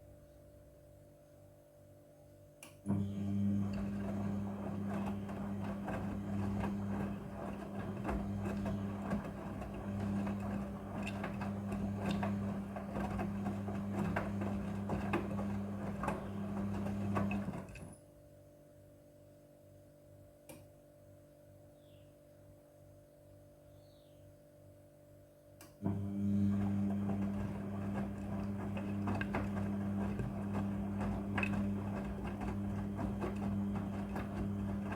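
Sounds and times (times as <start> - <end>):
washing machine motor humming: 2.9 - 18.0, 25.8 - 34.9.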